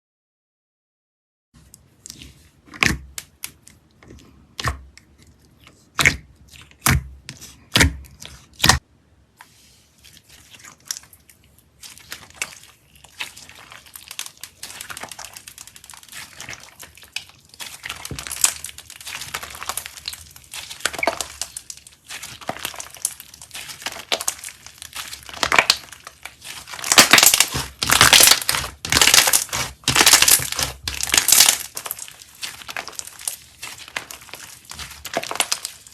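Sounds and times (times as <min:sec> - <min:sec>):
slime crackling and crinkling: 0:01.6 - 0:08.8, 0:09.4 - 0:35.9
slime popping: 0:11.8 - 0:35.9.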